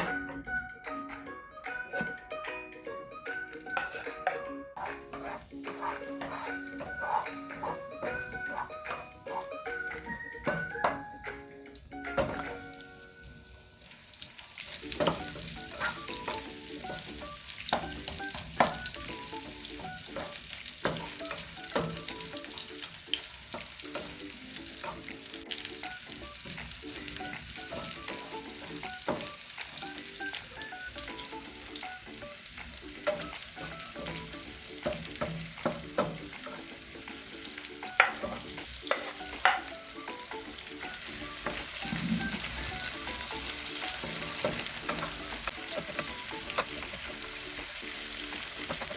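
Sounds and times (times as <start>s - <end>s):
food sizzling in a frying pan: 4.8s - 48.9s
utensil knocking against pan: 34.8s - 36.6s, 38.0s - 39.7s.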